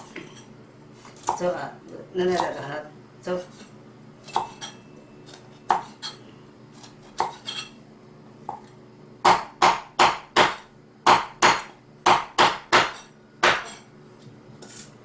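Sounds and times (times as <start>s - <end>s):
loud sharp chopping knocks: 9.3s - 13.7s.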